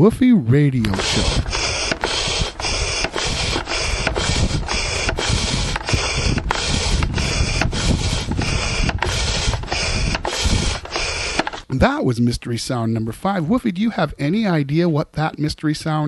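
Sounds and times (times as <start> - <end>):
air pump rushing air: 0.8 - 11.7.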